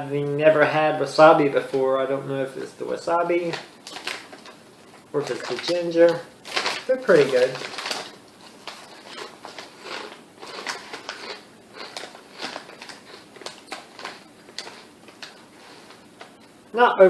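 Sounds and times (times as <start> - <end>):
person chewing crisp chips: 3.8 - 4.6, 5.2 - 16.4.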